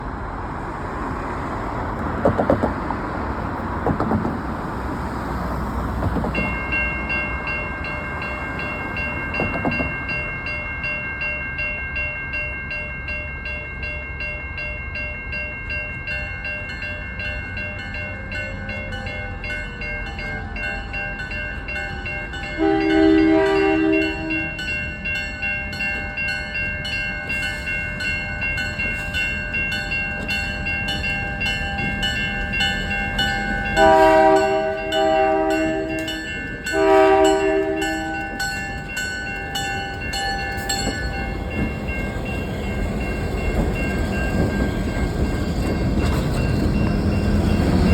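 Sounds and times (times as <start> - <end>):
railway crossing bell ringing: 3.3 - 47.9
locomotive horn: 22.6 - 24.6, 33.7 - 38.5.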